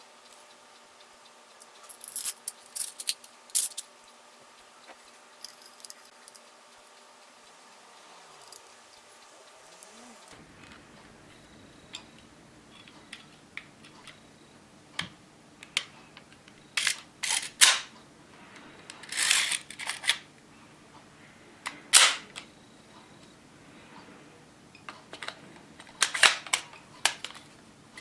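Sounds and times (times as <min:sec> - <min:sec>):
plastic toy pistol clicks and clacks: 0:16.8 - 0:17.9, 0:19.0 - 0:20.2, 0:21.9 - 0:22.4, 0:25.1 - 0:27.4.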